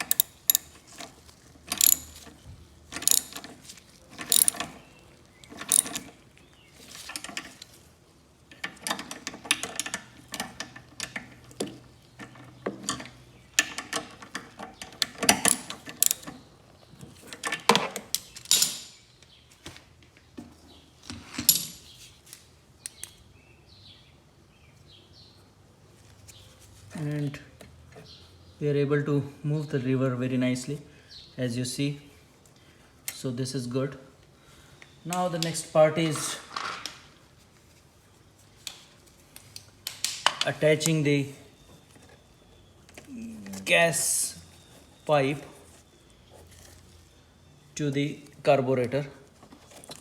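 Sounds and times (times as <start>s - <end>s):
ratchet wrench clicking: 0.0s - 0.8s, 1.7s - 2.2s, 3.0s - 3.4s, 4.3s - 4.7s, 5.7s - 6.0s, 15.5s - 16.3s.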